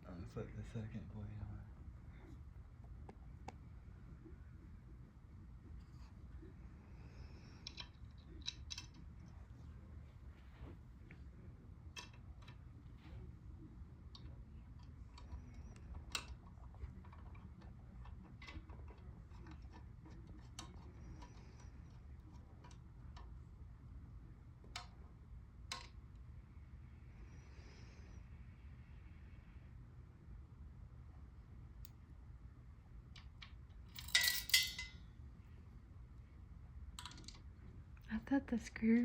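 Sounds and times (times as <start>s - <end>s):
low steady hum: 0.0s - 39.0s
faint clicks and taps: 2.2s - 3.8s, 14.1s - 23.6s, 24.5s - 26.3s.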